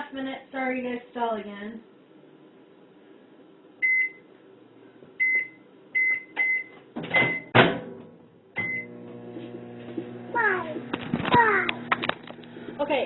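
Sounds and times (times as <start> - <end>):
microwave oven humming: 2.0 - 13.0
microwave keypad beeps: 3.8 - 4.2, 5.2 - 7.5, 8.6 - 9.0.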